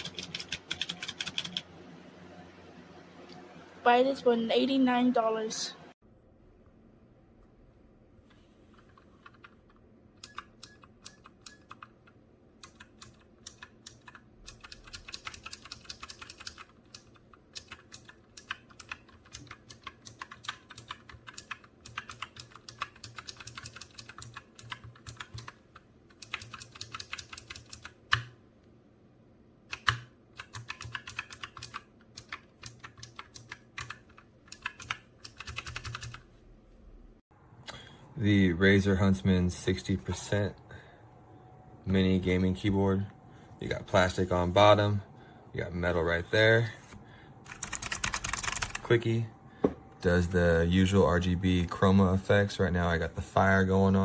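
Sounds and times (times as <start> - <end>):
keyboard key clicks: 29.7 - 36.2.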